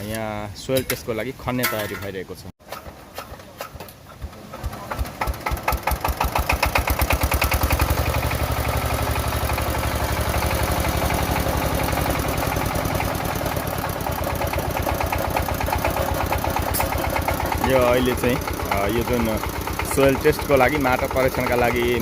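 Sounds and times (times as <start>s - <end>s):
boring machine engine starting: 4.2s - 22.0s.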